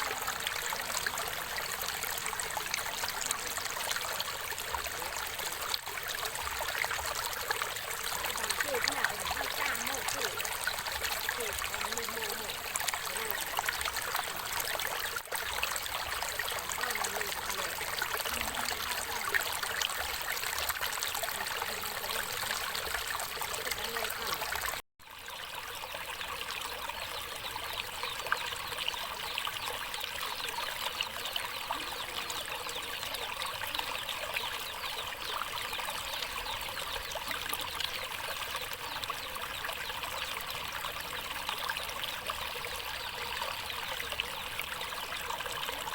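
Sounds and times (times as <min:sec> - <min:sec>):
stream water running over rocks: 0:00.0 - 0:45.9.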